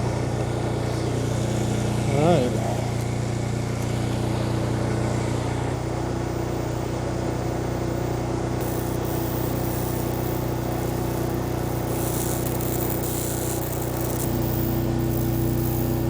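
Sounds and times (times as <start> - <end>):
machine hum with low tones: 0.0 - 16.0
high hiss: 8.6 - 16.0.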